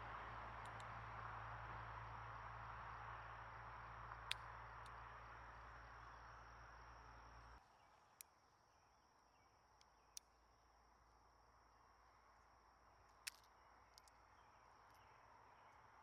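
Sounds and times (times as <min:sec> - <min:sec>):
faint background hiss and hum: 0:00.0 - 0:16.0
faint clicks: 0:13.0 - 0:15.1.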